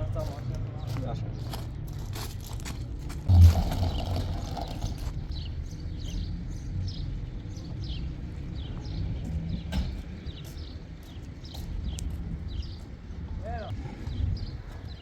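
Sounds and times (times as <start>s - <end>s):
steady low rumble: 3.2s - 6.0s
birds chirping: 3.2s - 15.0s.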